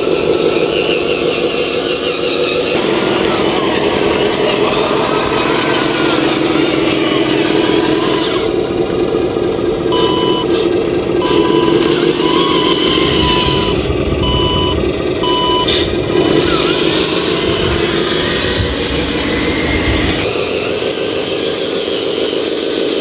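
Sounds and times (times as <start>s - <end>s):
small electric motor whirring: 0.0s - 9.1s, 9.9s - 23.0s
short electronic beeps: 9.9s - 10.5s, 11.2s - 15.8s.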